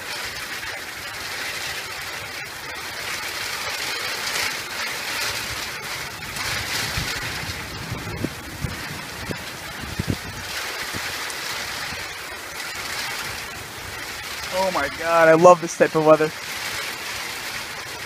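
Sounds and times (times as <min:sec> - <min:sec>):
heavy rain pouring: 0:00.0 - 0:18.0
low thumps: 0:05.5 - 0:11.2.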